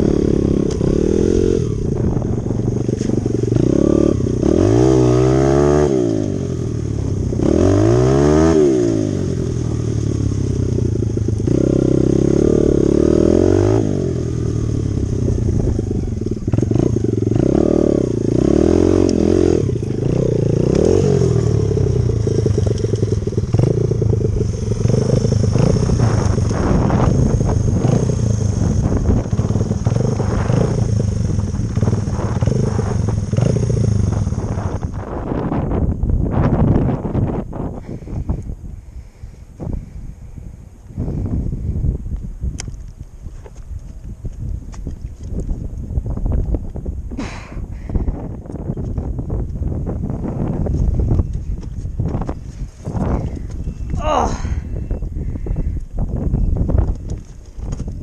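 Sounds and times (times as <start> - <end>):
bike rattling over rough ground: 0.0 - 5.8, 14.3 - 38.4, 42.4 - 58.0
dirt bike engine revving: 0.0 - 35.7.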